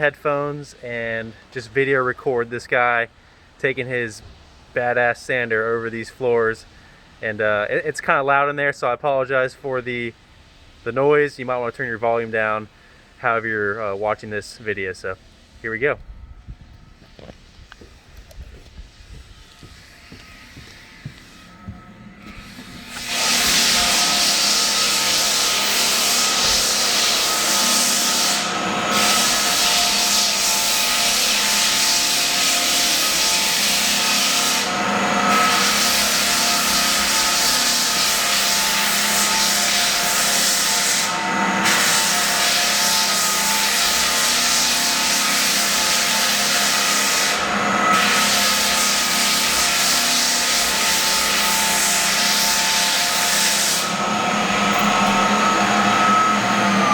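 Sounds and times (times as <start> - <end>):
floor sander sanding wood: 17.0 - 56.9.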